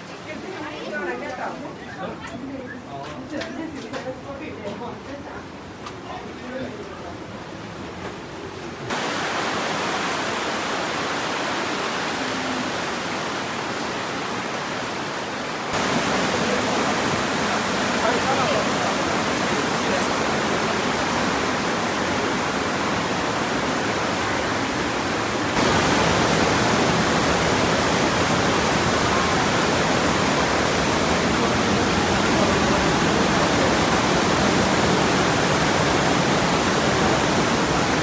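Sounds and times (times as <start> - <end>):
rushing whitewater: 8.9 - 38.0.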